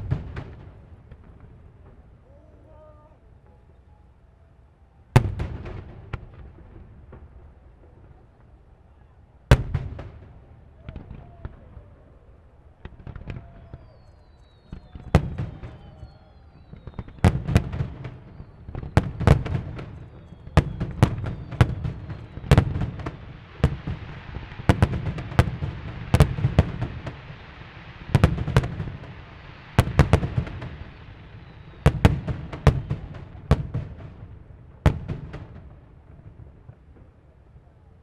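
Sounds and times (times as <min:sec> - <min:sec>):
whistling fireworks shells: 0:10.8 - 0:35.7
fireworks shells bursting: 0:15.8 - 0:34.3
crackling stars hissing: 0:21.5 - 0:32.6.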